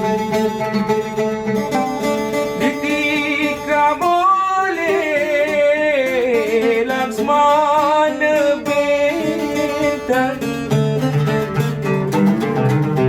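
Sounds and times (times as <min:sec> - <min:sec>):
plucked strings: 0:00.0 - 0:13.0
person singing: 0:02.4 - 0:11.4.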